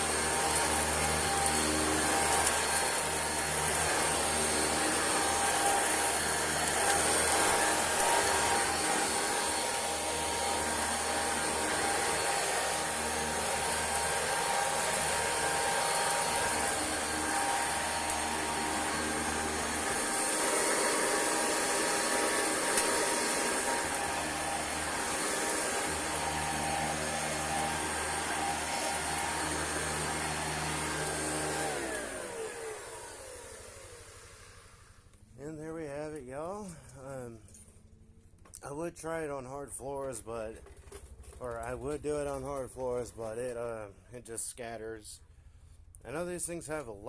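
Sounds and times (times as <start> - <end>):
vacuum cleaner running: 0.0 - 37.2.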